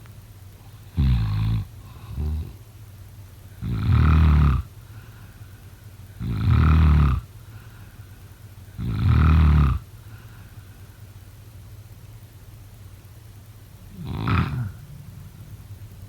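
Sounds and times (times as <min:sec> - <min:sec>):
soft breaths: 0:00.6 - 0:02.7, 0:03.4 - 0:06.6, 0:07.2 - 0:11.5
person snoring: 0:00.9 - 0:02.6, 0:03.6 - 0:04.7, 0:06.2 - 0:07.3, 0:08.8 - 0:09.8, 0:13.9 - 0:14.9.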